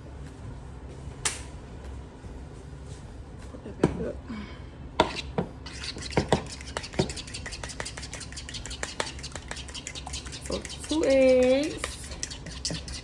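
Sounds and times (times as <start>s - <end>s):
fork tapping in a bowl: 6.1s - 13.0s.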